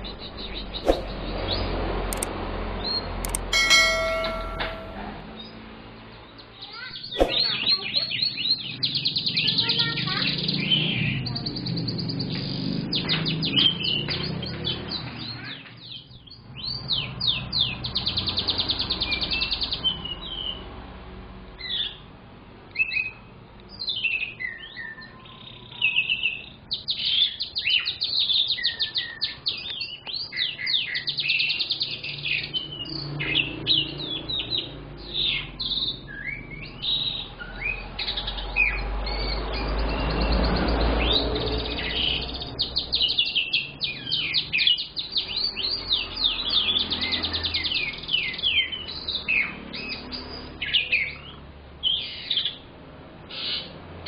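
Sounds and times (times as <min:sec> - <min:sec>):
canary singing trills: 0:22.8 - 0:52.7.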